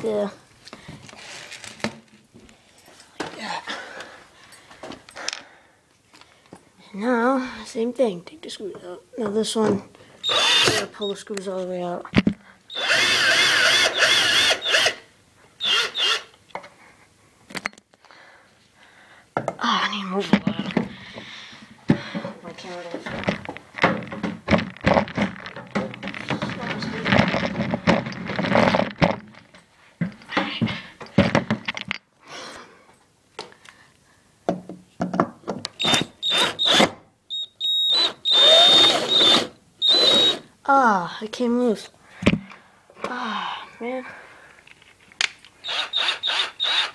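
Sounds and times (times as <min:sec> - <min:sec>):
cordless drill whining: 0:10.2 - 0:11.0, 0:12.7 - 0:15.0, 0:15.6 - 0:16.3, 0:35.8 - 0:40.5, 0:45.6 - 0:46.9
knocks and clatter of handling: 0:20.2 - 0:32.1, 0:34.5 - 0:35.7.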